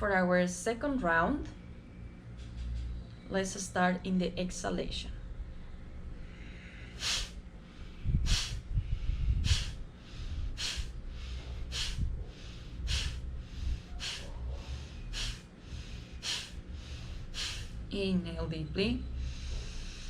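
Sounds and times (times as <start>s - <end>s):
forceful nasal exhalations: 6.6s - 17.8s.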